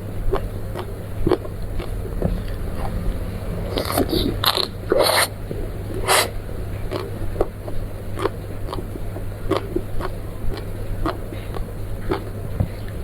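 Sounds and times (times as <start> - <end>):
chewing clicks: 0.3 - 3.0, 6.9 - 13.0
bite into food: 3.7 - 5.3.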